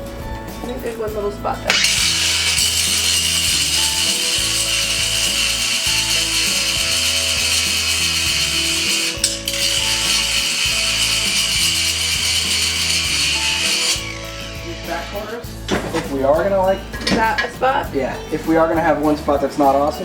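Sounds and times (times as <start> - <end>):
background music: 0.0 - 20.0
angle grinder grinding steel: 1.7 - 15.7.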